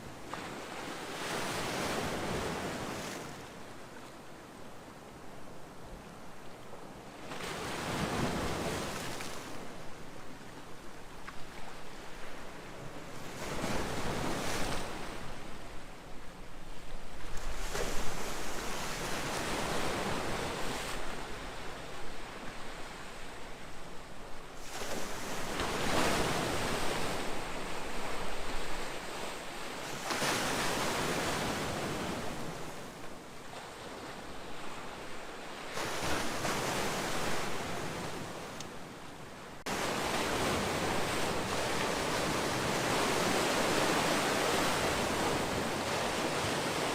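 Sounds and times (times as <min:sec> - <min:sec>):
sea waves breaking: 0:24.6 - 0:46.9.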